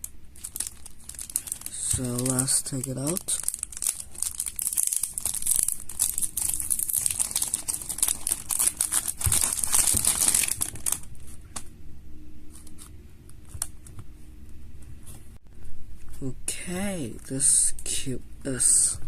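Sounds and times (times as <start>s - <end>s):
packaging crinkling and tearing: 0.0s - 11.3s.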